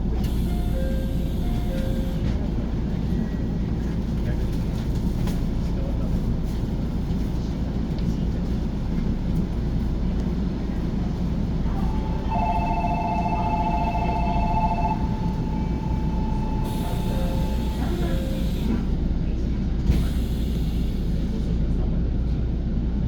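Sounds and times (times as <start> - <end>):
train wheels rumbling on track: 0.0 - 23.0
pulsing multi-pitch ringing tone: 12.3 - 18.1.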